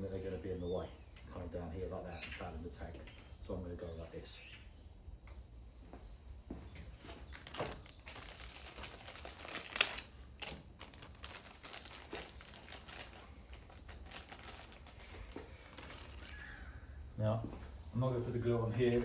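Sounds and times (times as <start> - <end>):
small clicks and rustles: 7.2 - 16.4.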